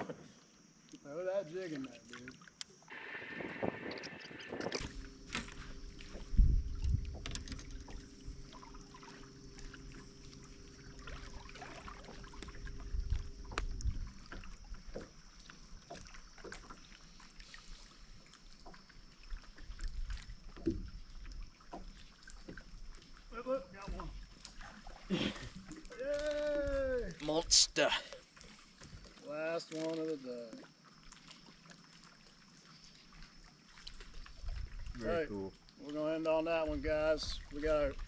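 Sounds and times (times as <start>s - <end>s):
low hum: 2.9s - 16.2s.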